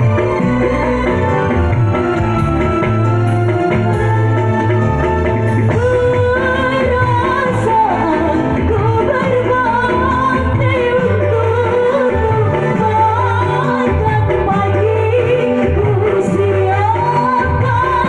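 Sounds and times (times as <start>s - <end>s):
keyboard and bass backing track: 0.0s - 18.0s
woman singing slow melody: 5.7s - 18.0s.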